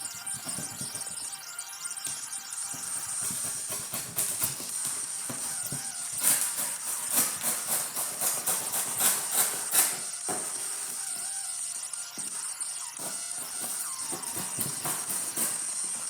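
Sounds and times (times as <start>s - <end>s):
background music: 0.0s - 16.0s
utility knife slicing cardboard: 2.7s - 11.1s, 13.0s - 16.0s.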